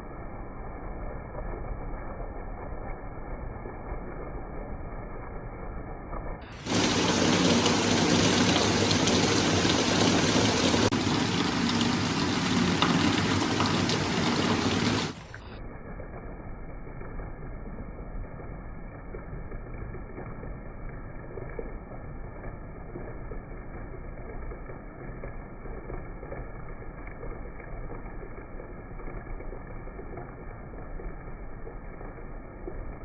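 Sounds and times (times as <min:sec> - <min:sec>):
heavy rain falling: 0:06.5 - 0:15.4.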